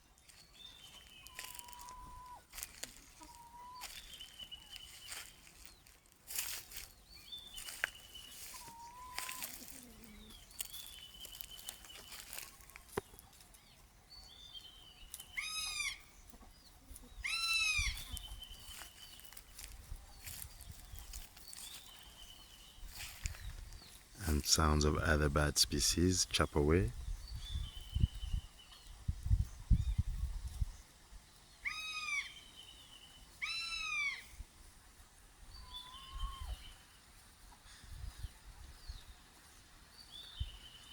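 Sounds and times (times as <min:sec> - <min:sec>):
small birds chirping: 0:00.0 - 0:34.4, 0:35.5 - 0:40.9
lower bird call: 0:00.7 - 0:05.9, 0:07.5 - 0:12.8, 0:35.5 - 0:36.8
eagle screaming calls: 0:01.2 - 0:02.5, 0:03.2 - 0:04.1, 0:08.4 - 0:09.8, 0:15.3 - 0:16.0, 0:17.2 - 0:18.2, 0:31.6 - 0:32.4, 0:33.4 - 0:34.3, 0:35.6 - 0:36.7
loud drawn-out bird calls: 0:15.3 - 0:16.1.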